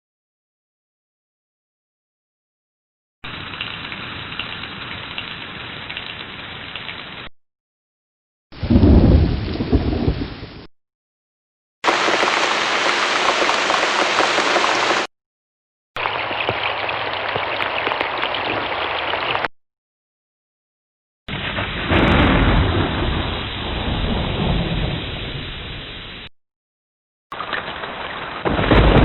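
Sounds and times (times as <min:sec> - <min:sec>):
heavy rain: 0:08.6 - 0:10.7, 0:11.8 - 0:15.1, 0:21.3 - 0:26.3, 0:27.3 - 0:29.0
thunder rumble: 0:08.6 - 0:10.7, 0:21.3 - 0:26.3, 0:27.6 - 0:29.0.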